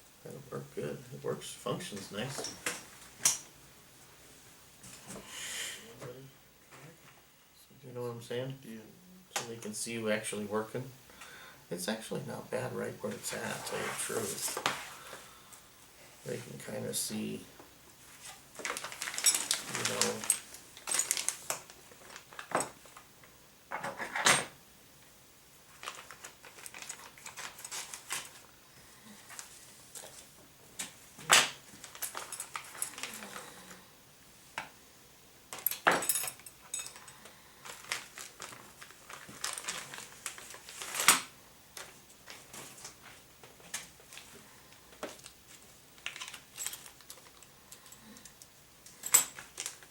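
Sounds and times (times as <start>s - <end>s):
small parts clicking and clattering: 18.6s - 23.0s, 25.8s - 28.4s, 30.8s - 33.8s, 35.5s - 42.9s, 43.6s - 49.9s.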